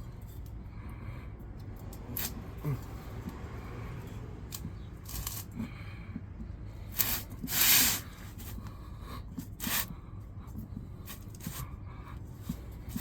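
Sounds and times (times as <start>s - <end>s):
rubber tire scraping on rim: 6.9s - 8.6s.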